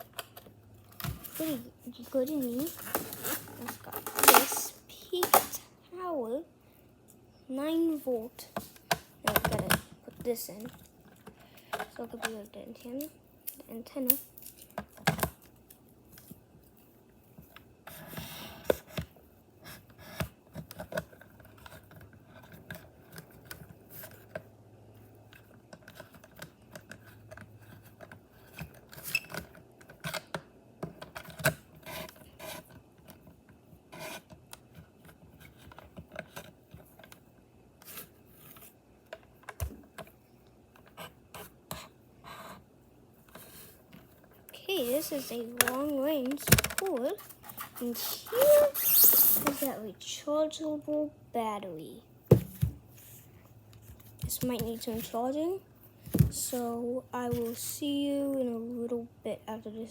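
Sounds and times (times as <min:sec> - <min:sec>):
plastic parts clicking and tapping: 0:08.8 - 0:12.4, 0:45.5 - 0:49.7.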